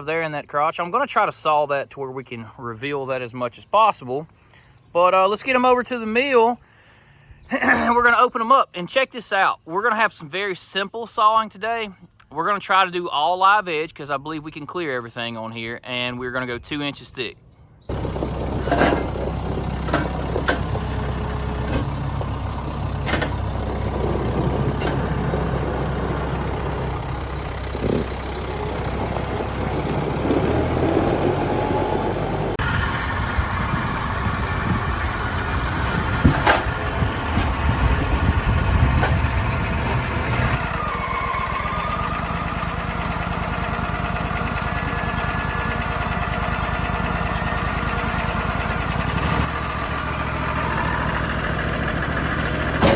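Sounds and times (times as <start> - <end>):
sharp knocks and clanks: 17.9 - 31.1, 35.8 - 37.7, 52.5 - 52.9
machine engine running: 17.9 - 52.9.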